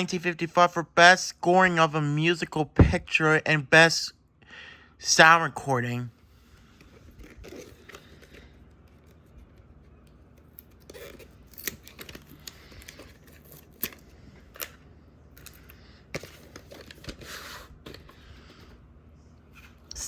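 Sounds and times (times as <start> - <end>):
rustling and scraping: 15.4 - 20.0.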